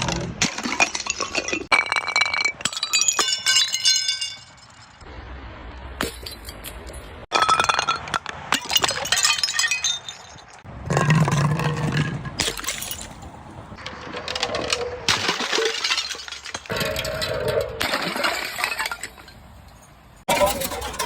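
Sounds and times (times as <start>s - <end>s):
glass bottles shattering: 0.4s - 5.0s, 6.0s - 13.2s, 14.3s - 21.0s
glass shards clinking: 0.6s - 5.0s, 6.0s - 10.6s, 12.4s - 13.2s, 14.3s - 21.0s.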